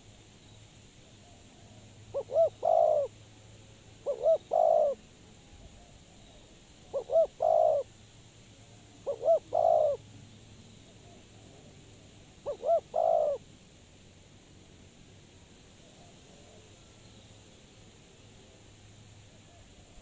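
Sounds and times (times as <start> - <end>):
dove cooing: 2.1 - 3.1, 4.0 - 5.0, 6.9 - 7.9, 9.0 - 10.0, 12.4 - 13.4.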